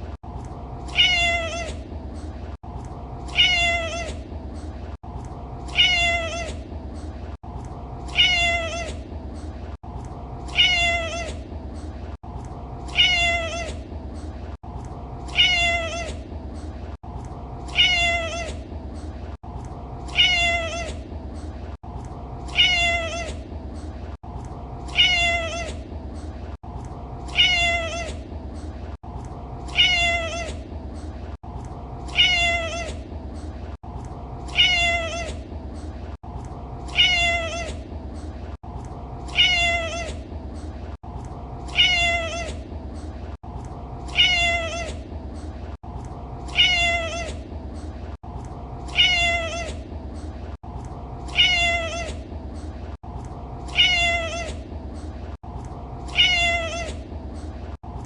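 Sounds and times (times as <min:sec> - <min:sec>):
cat meowing: 0:00.9 - 0:01.8, 0:03.3 - 0:04.2, 0:05.7 - 0:06.6, 0:08.1 - 0:09.0, 0:10.5 - 0:11.4, 0:12.9 - 0:13.8, 0:15.3 - 0:16.2, 0:17.7 - 0:18.6, 0:20.1 - 0:21.0, 0:22.5 - 0:23.4, 0:24.9 - 0:25.8, 0:27.3 - 0:28.2, 0:29.7 - 0:30.6, 0:32.1 - 0:33.0, 0:34.5 - 0:35.4, 0:36.9 - 0:37.8, 0:39.3 - 0:40.2, 0:41.7 - 0:42.6, 0:44.1 - 0:45.0, 0:46.5 - 0:47.4, 0:48.9 - 0:49.8, 0:51.3 - 0:52.2, 0:53.7 - 0:54.6, 0:56.1 - 0:57.0.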